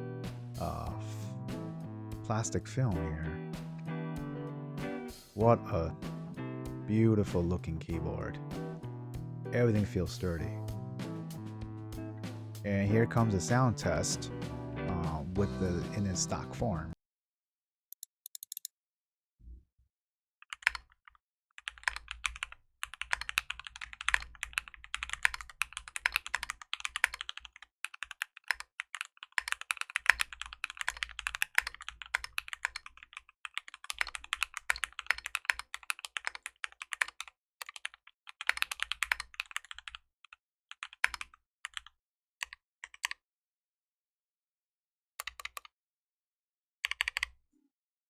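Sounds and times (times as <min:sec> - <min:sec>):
fast mechanical keyboard typing: 0:20.5 - 0:21.0, 0:21.6 - 0:40.0, 0:40.7 - 0:43.2, 0:45.2 - 0:45.7, 0:46.9 - 0:47.3.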